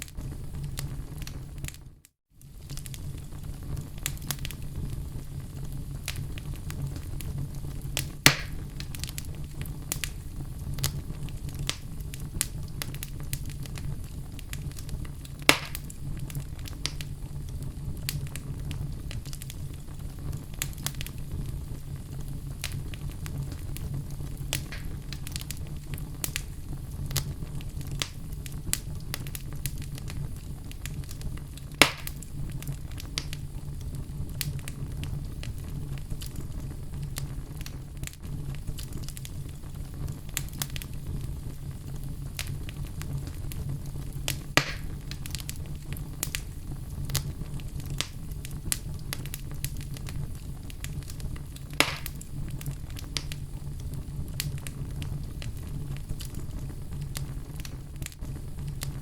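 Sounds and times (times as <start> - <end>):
fire crackling in fireplace: 0.0 - 59.0
logs popping: 8.0 - 9.3, 15.4 - 16.0, 22.6 - 25.6, 30.9 - 32.3, 44.3 - 45.6, 50.9 - 53.4.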